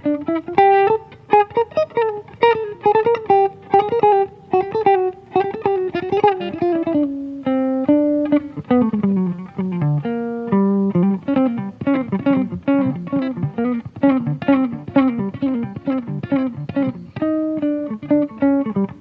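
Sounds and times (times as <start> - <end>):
solo guitar melody: 0.0 - 19.0.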